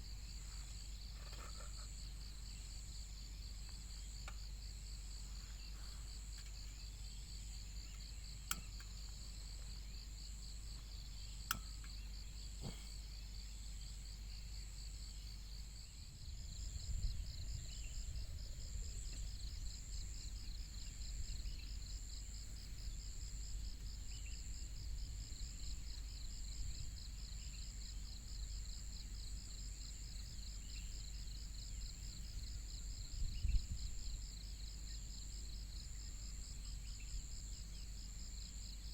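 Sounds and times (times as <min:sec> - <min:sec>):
crickets trilling: 0:00.0 - 0:38.9
high insect hum: 0:00.0 - 0:38.9
sharp clicks: 0:08.5 - 0:08.9
wind rumble on microphone: 0:16.1 - 0:21.9, 0:32.2 - 0:34.2.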